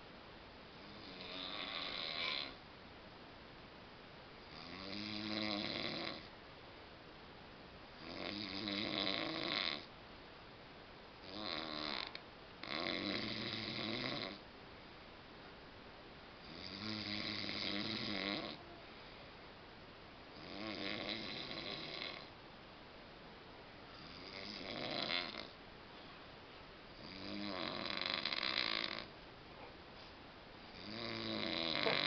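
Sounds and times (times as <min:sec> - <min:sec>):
man snoring: 0:00.8 - 0:02.6, 0:04.4 - 0:06.3, 0:08.0 - 0:09.9, 0:11.2 - 0:14.4, 0:16.4 - 0:18.6, 0:20.4 - 0:22.3, 0:24.0 - 0:25.6, 0:27.0 - 0:29.1, 0:30.7 - 0:32.0
quiet breathing: 0:16.4 - 0:19.6, 0:23.8 - 0:32.0.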